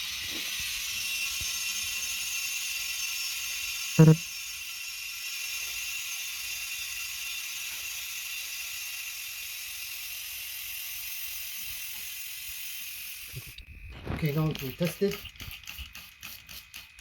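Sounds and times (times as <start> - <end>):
compressed air hissing: 11.0 - 16.9.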